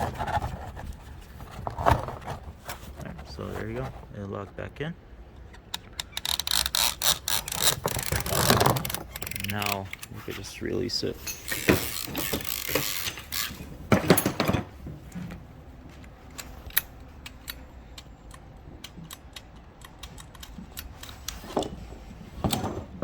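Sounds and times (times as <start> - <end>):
seat belt retractor ratcheting clicks: 5.5 - 10.1, 11.4 - 13.6.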